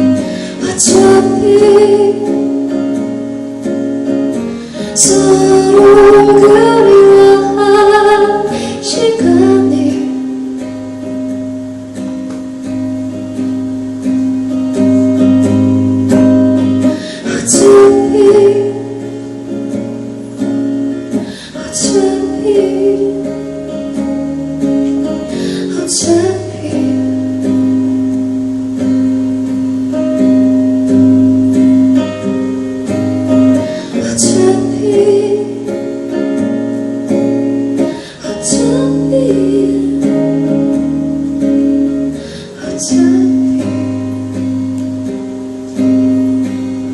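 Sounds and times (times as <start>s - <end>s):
woman singing: 0.0s - 3.2s, 4.3s - 11.2s, 15.2s - 19.8s, 20.9s - 28.2s, 32.9s - 36.6s, 37.5s - 44.6s
strummed acoustic guitar: 0.0s - 46.9s.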